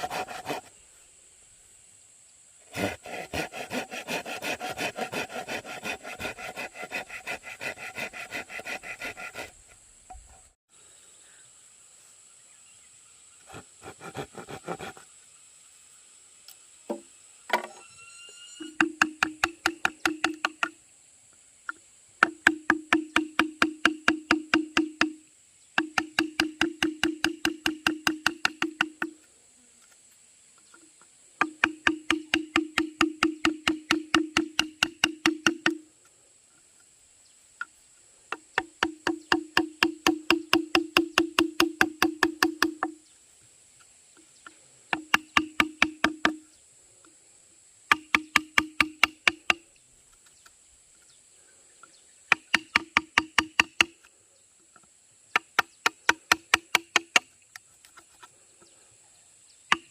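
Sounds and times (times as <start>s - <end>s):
ringing tone: 17.7s - 18.8s.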